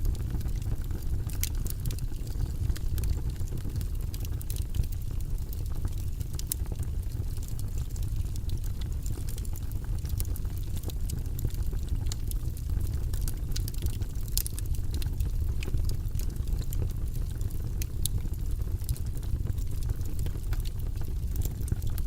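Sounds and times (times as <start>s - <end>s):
fire rumbling: 0.0s - 22.0s
wood crackling and popping: 0.0s - 22.0s.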